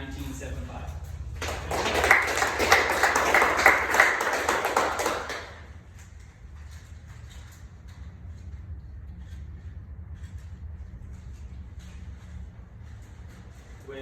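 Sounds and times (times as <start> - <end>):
people clapping: 1.3 - 6.1.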